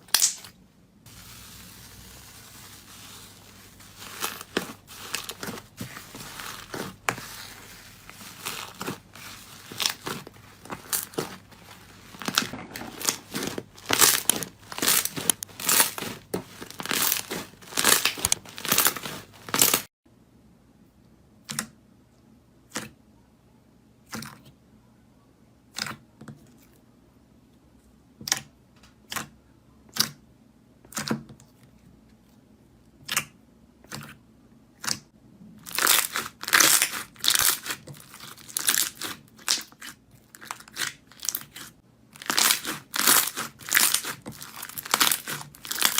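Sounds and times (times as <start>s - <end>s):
slime crackling and popping: 0.0s - 0.5s, 1.1s - 19.9s, 35.6s - 45.9s.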